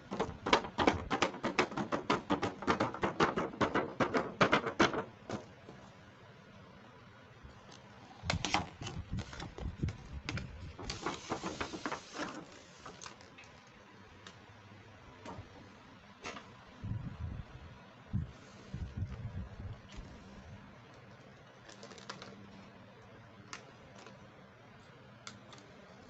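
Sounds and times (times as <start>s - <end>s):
packaging rustle: 8.4s - 13.8s, 20.9s - 22.7s.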